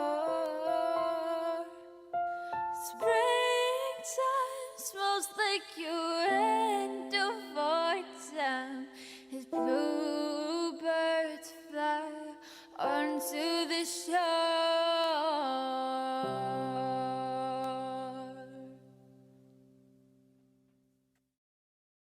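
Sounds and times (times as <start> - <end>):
person singing long notes: 0.0 - 1.9.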